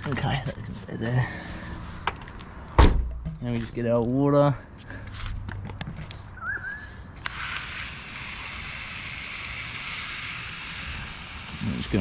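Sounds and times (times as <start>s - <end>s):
water spraying: 7.2s - 12.0s.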